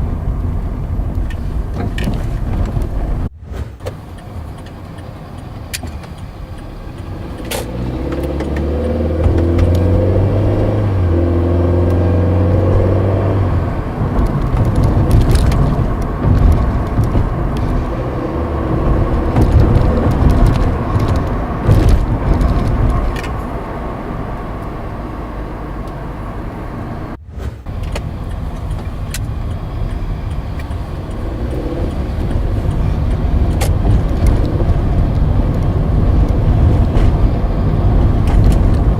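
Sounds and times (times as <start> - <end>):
tyre noise: 0.0 - 38.9
car engine accelerating: 3.9 - 38.9
suspension knocks: 6.9 - 24.3.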